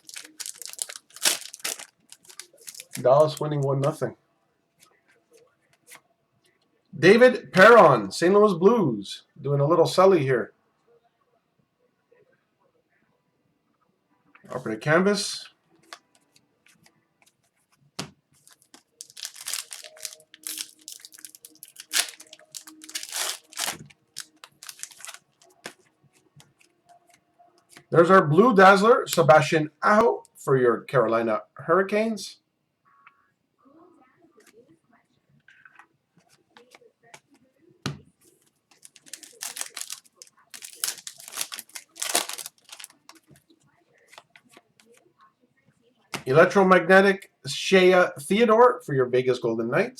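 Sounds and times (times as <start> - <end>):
foil wrapper tearing and crinkling: 0.0 - 3.5, 18.4 - 25.6, 38.8 - 43.3.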